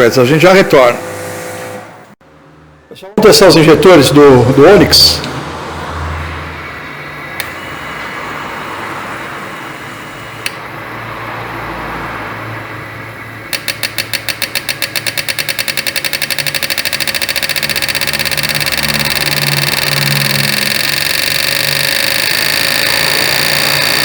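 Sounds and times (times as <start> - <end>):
fuel injectors clicking: 7.2 - 8.1, 13.4 - 24.0
steady hum: 12.3 - 24.0.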